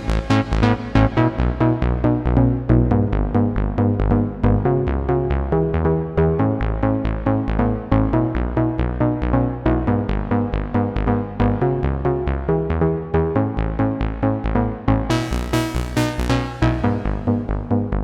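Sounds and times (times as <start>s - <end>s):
synthesizer sequence: 0.0s - 2.3s, 15.1s - 17.8s.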